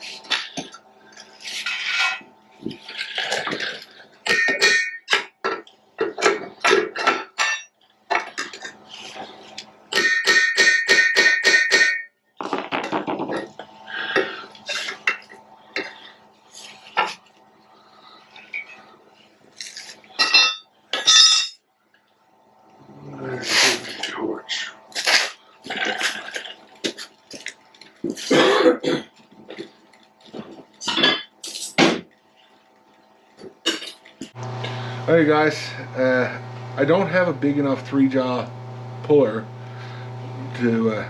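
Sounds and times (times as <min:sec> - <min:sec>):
faint steady hum: 0:00.0 - 0:41.0
hand tools striking steel: 0:09.9 - 0:12.1.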